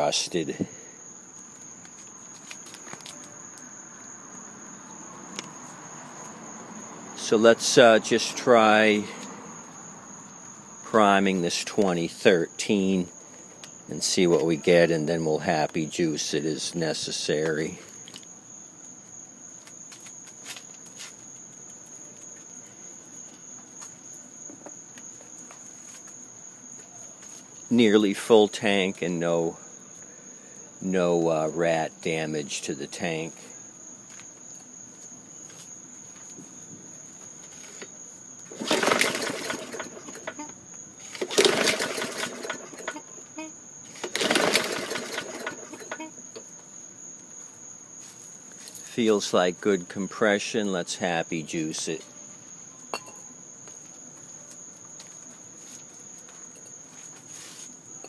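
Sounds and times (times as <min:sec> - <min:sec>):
crickets chirping: 0:00.0 - 0:58.0
mower engine turning over: 0:38.5 - 0:40.5, 0:41.1 - 0:43.1, 0:43.9 - 0:46.1.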